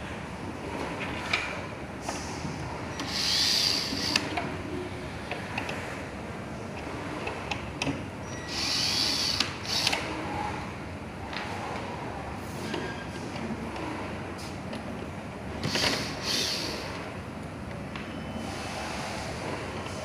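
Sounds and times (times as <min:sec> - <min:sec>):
electric screwdriver whirring: 0:03.0 - 0:04.3, 0:08.5 - 0:10.0, 0:15.6 - 0:16.6.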